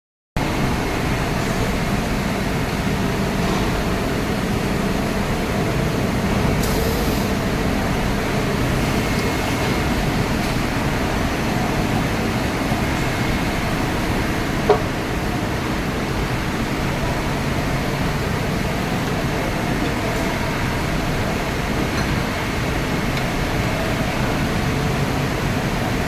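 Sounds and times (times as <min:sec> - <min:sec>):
machine running hum and hiss: 0:00.4 - 0:26.0
brief high hiss: 0:06.6 - 0:07.4.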